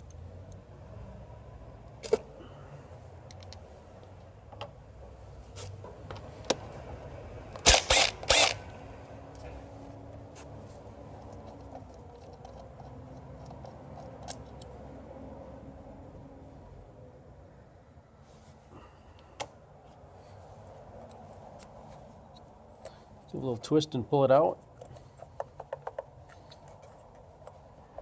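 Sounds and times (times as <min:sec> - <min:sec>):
ratchet rasping bursts: 0:07.6 - 0:08.6.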